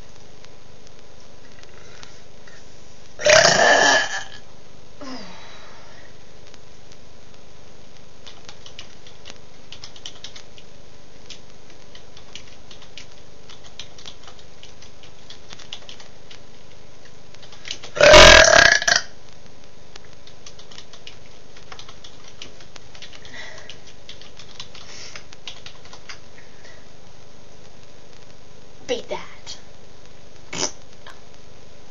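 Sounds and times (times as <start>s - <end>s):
low hiss: 0.0s - 31.9s
person burping: 3.2s - 4.4s, 18.0s - 19.1s, 30.5s - 30.8s.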